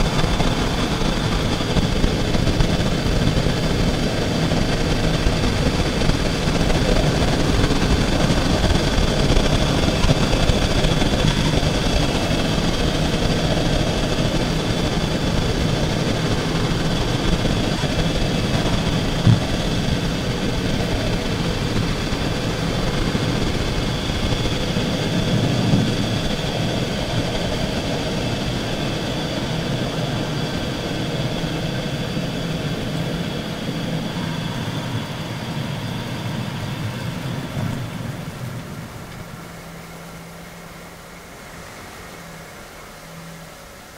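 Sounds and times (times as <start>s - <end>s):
car running: 0.0s - 43.9s
short knock: 19.2s - 19.6s.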